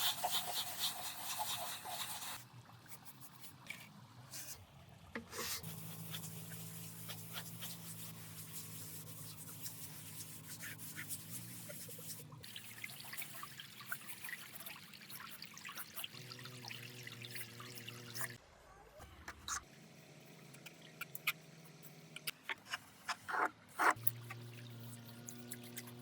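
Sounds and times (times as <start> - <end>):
small ticks and splashes: 11.9 - 18.4
water trickling and dripping: 11.9 - 18.4.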